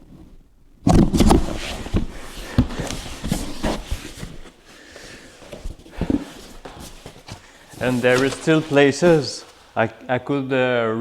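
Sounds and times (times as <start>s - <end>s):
cardboard box being handled: 0.9s - 4.7s, 5.3s - 9.6s.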